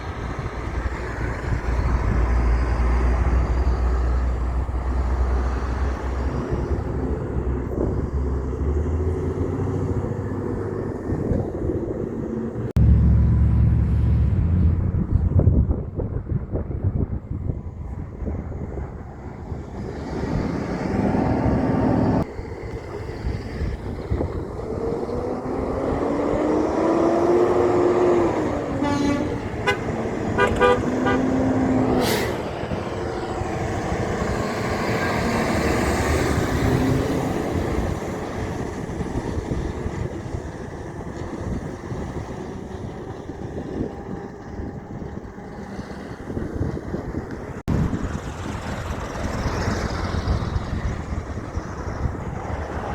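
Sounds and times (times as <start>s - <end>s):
heavy truck engine passing: 0.0s - 52.9s
short horn toots: 28.8s - 32.4s
sharp horn burst: 28.8s - 32.5s.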